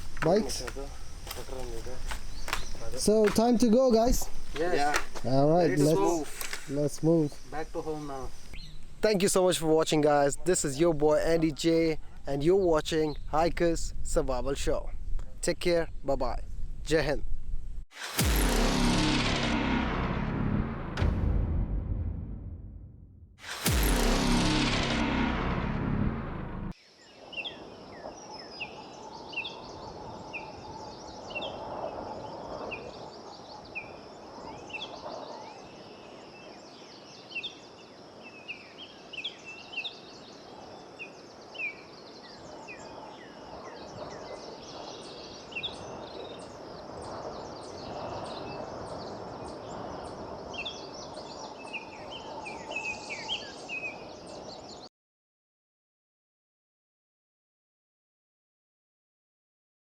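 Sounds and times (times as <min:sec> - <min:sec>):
high insect drone: 0:00.0 - 0:08.9
bird chirps and calls: 0:05.7 - 0:08.8.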